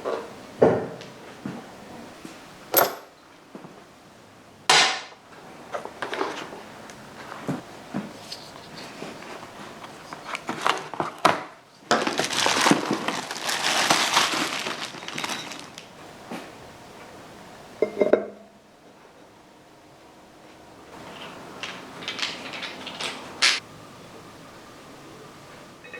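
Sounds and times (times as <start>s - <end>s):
crinkling rustle: 5.7s - 16.5s, 21.0s - 23.6s.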